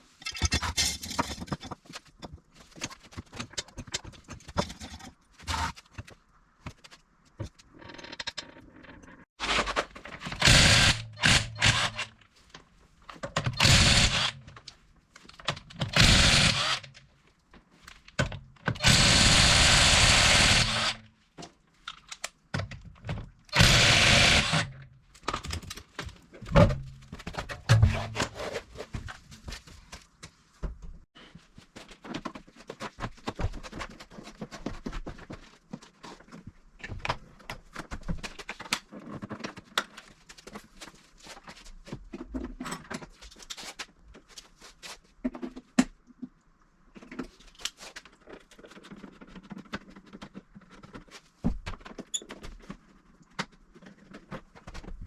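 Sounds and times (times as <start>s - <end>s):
tools knocking and clattering: 0.1s - 8.5s
handheld power tool running: 10.4s - 12.1s, 13.6s - 14.4s, 16.0s - 16.9s, 18.8s - 21.0s, 23.6s - 24.8s.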